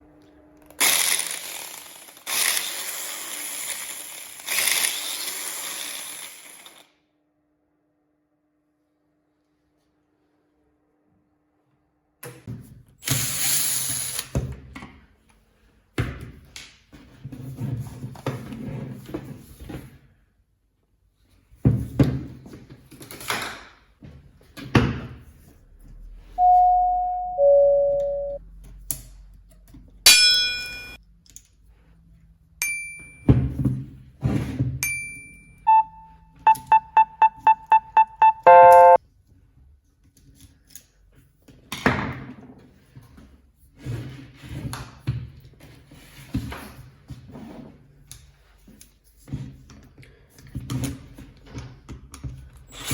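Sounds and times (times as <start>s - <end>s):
electronic beeps: 26.4s - 28.4s, 35.7s - 39.0s
two-note falling chime: 26.4s - 28.4s, 35.7s - 39.0s.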